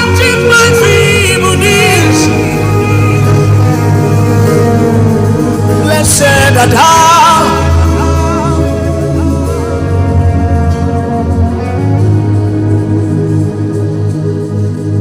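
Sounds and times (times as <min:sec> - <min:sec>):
held keyboard chords: 0:00.0 - 0:15.0
steady bass: 0:00.0 - 0:15.0
wavering lead melody: 0:00.0 - 0:15.0.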